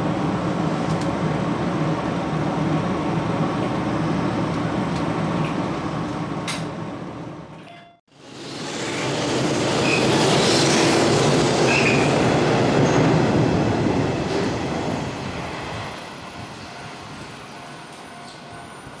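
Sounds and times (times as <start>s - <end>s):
train wheels rumbling on rails: 8.2s - 19.0s.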